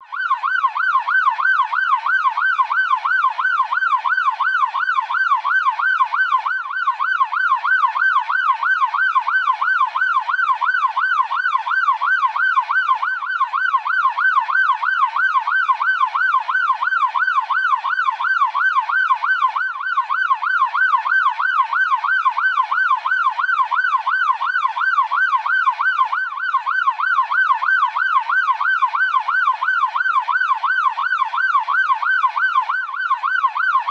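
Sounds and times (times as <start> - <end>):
police siren yelping: 0.0 - 33.9.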